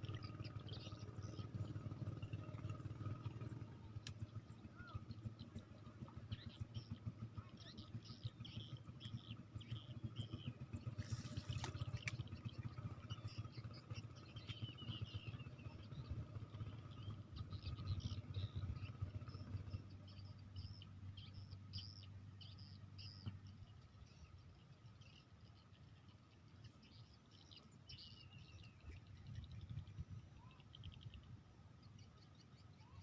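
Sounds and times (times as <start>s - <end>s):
low steady rumble: 0.0s - 33.0s
small birds chirping: 0.0s - 33.0s
rustle: 10.9s - 12.3s.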